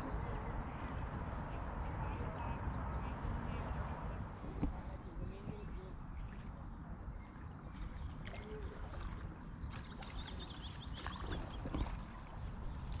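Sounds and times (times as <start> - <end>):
bird chirping: 4.8 - 13.0.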